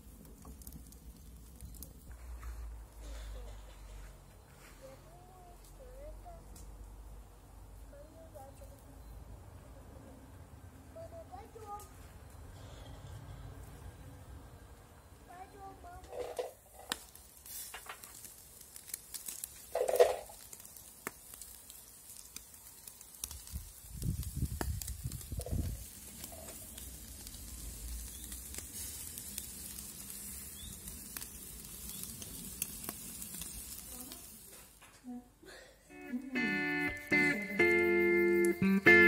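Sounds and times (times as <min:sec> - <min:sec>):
meat sizzling on a grill: 0:00.0 - 0:02.1, 0:15.3 - 0:34.8.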